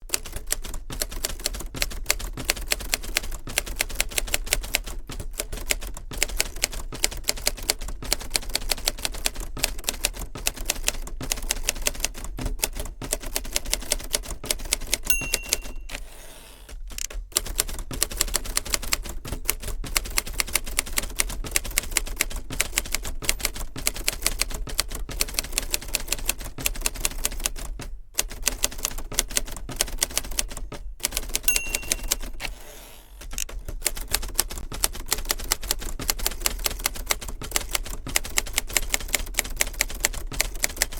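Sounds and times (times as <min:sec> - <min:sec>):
manual typewriter typing: 0:00.1 - 0:40.9
typewriter bell ring: 0:15.1 - 0:16.2, 0:31.4 - 0:32.7.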